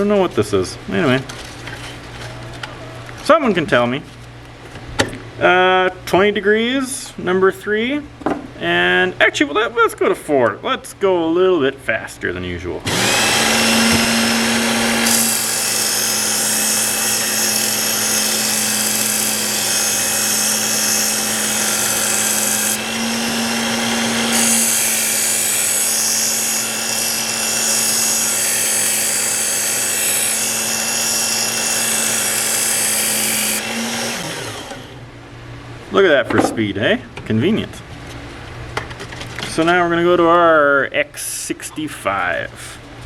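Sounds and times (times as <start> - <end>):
belt sharpener motor humming: 12.9 - 35.0.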